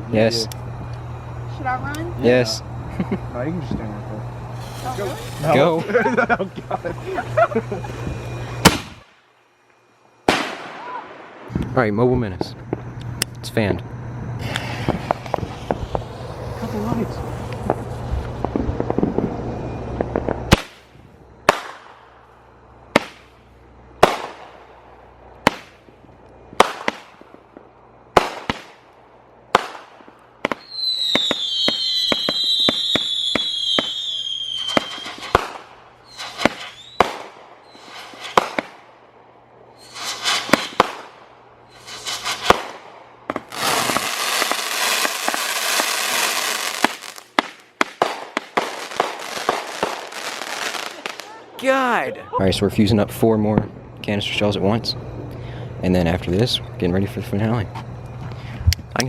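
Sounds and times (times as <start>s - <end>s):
firework crackle: 0.0s - 13.4s, 14.3s - 39.0s, 39.7s - 52.0s
firework bangs: 1.8s - 9.5s, 10.2s - 13.0s, 14.3s - 39.0s, 39.7s - 51.6s
falling firework whistles: 3.8s - 11.7s, 14.3s - 22.0s, 29.5s - 38.9s, 39.7s - 51.4s.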